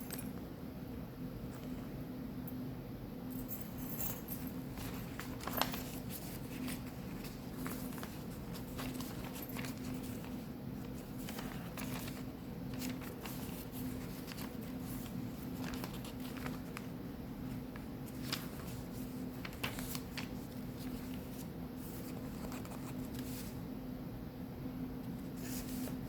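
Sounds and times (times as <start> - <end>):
steady low hum: 0.0 - 26.0
paper pages turning and rustling: 4.4 - 23.6, 25.1 - 26.0.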